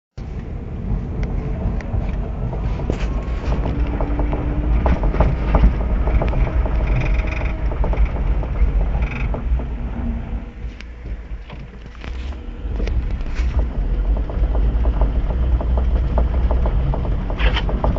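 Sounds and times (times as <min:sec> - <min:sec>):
car road rumble: 0:00.2 - 0:17.9
sharp knocks from wheel arch: 0:12.9 - 0:17.9.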